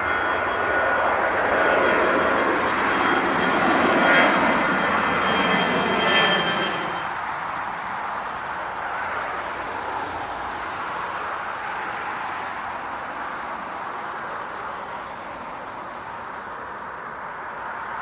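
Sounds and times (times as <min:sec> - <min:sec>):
jet engine rush: 0:00.0 - 0:12.5.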